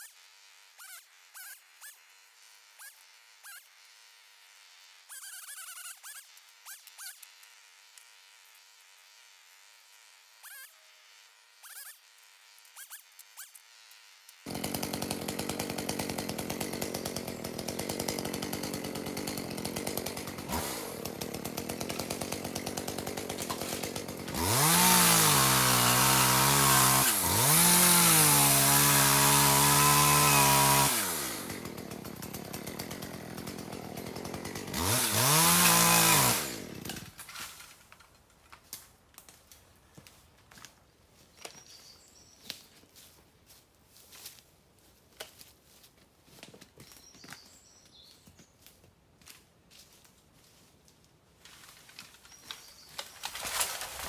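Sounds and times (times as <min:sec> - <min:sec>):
chainsaw idling and revving: 0:00.0 - 0:37.2, 0:52.2 - 0:54.0.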